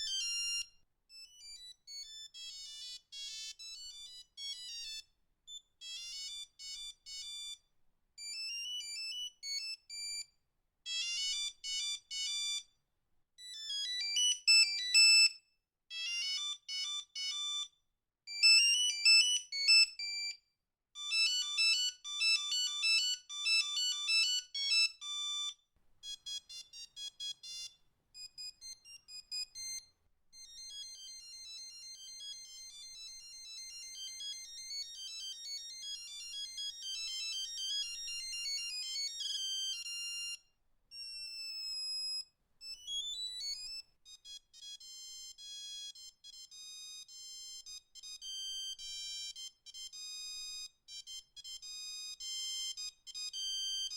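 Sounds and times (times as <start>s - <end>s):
monophonic phone ringtones: 30.4s - 39.8s.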